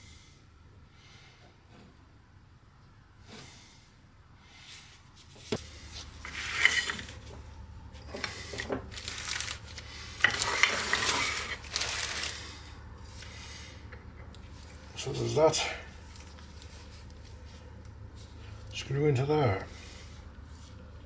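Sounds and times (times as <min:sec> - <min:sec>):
metal parts clinking and scraping: 0:06.2 - 0:07.3, 0:08.1 - 0:12.5
metal parts rubbing: 0:06.2 - 0:07.3, 0:08.2 - 0:12.5.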